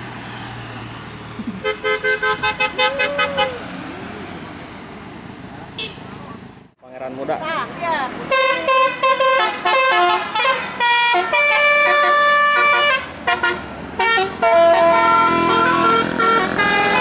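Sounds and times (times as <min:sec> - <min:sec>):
vehicle noise: 0:00.0 - 0:17.0
musical horn tooting: 0:01.6 - 0:03.7, 0:08.3 - 0:17.0.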